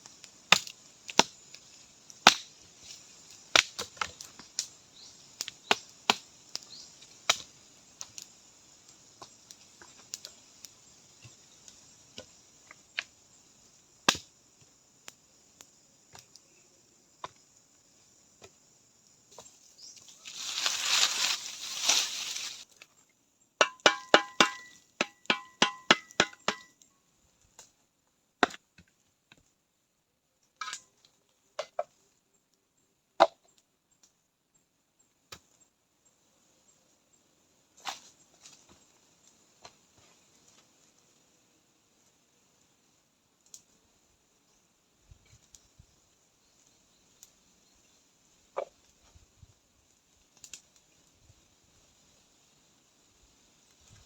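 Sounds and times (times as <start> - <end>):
wood being chopped: 2.2 - 2.5, 23.6 - 26.7, 28.4 - 28.6
rustling scrape: 20.1 - 22.6.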